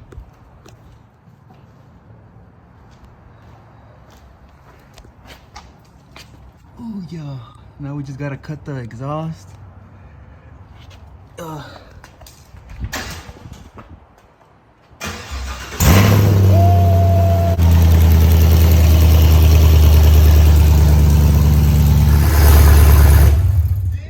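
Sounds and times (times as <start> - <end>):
car engine starting and idling: 15.0 - 24.0.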